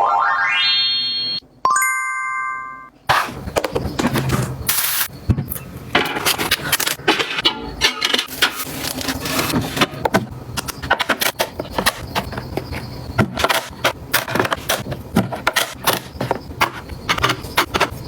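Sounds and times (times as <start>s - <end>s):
electronic tone: 0.0s - 2.9s
bright chime ding: 0.4s - 2.9s
packaging handled and set down: 8.0s - 10.3s.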